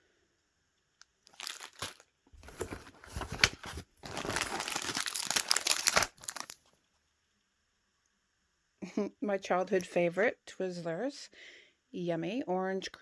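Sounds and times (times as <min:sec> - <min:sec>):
snack packaging crinkling: 0:01.2 - 0:06.7.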